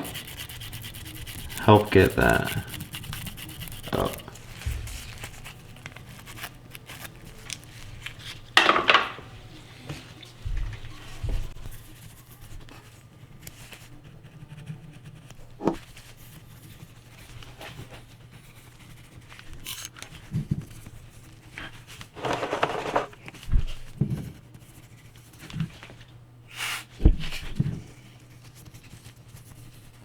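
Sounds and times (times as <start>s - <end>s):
brush scrubbing: 0.0s - 8.5s.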